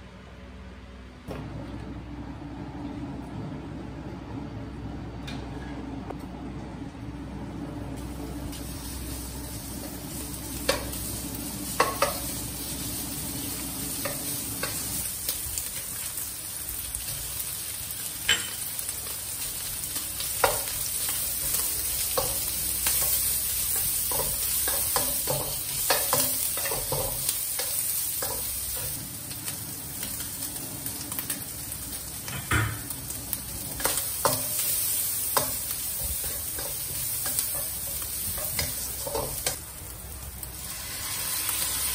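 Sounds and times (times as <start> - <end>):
food sizzling in a pan: 8.0 - 41.9
spatula knocking and scraping pan: 11.7 - 12.3, 21.4 - 28.9, 35.4 - 39.6.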